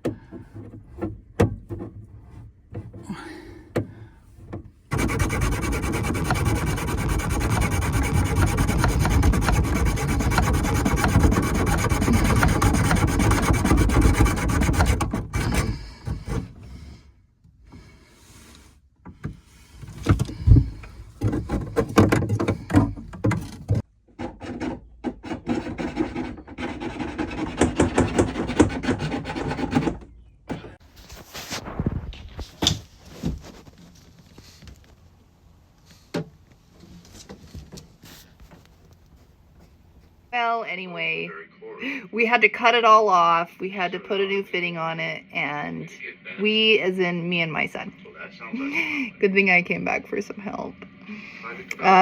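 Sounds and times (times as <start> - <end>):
rubbing and scraping: 4.9 - 17.1, 19.4 - 35.1.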